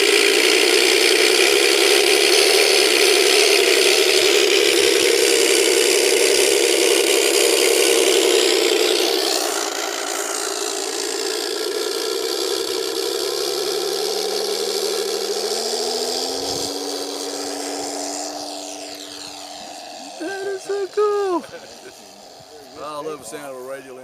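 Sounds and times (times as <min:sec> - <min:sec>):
simulated aircraft engine sound: 0:14.8 - 0:24.0.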